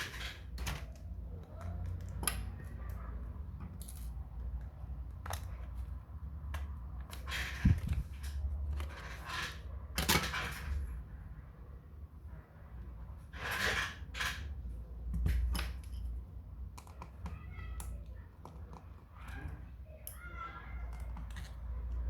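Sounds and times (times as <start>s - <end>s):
clicks and taps of small objects: 0.0s - 8.9s, 15.0s - 22.0s.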